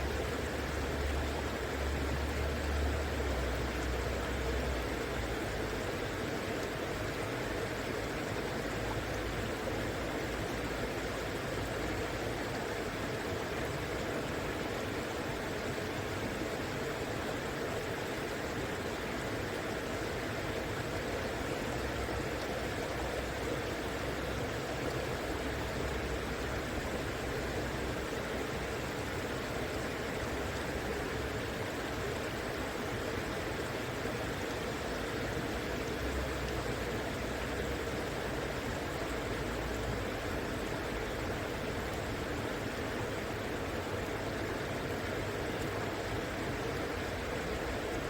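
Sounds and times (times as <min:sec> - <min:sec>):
river water flowing: 0:00.0 - 0:48.0.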